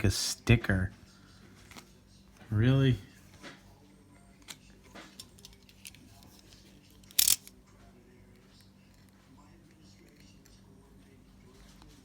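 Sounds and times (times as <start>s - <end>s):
trading cards clicking and rustling: 4.5s - 7.5s.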